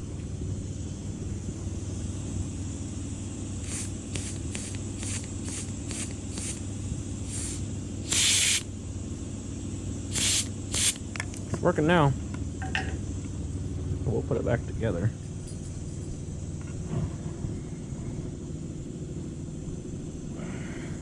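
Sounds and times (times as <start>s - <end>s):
steady low hum: 0.0s - 21.0s
washer fluid spray hissing: 3.4s - 8.8s, 9.9s - 11.1s.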